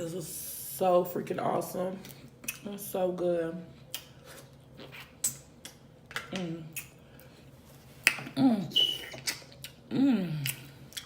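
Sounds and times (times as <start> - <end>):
wet lip-smacking while eating: 2.4 - 2.7, 3.9 - 7.3, 8.0 - 11.0
high squeak of sucking: 8.8 - 9.3
person humming mm: 9.9 - 10.6.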